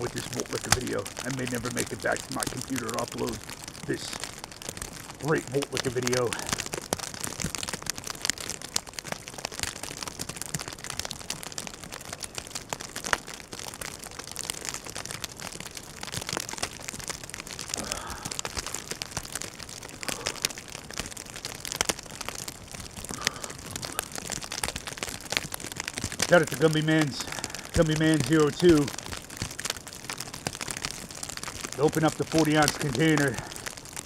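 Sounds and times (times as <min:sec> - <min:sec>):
snow pelting microphone and clothing: 0:00.0 - 0:07.8, 0:16.0 - 0:34.0.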